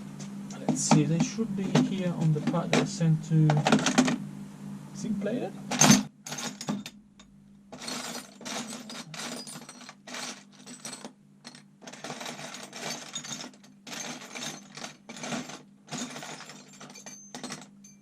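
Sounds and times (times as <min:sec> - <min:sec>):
small metal parts clinking: 0:05.7 - 0:07.0, 0:07.7 - 0:18.0.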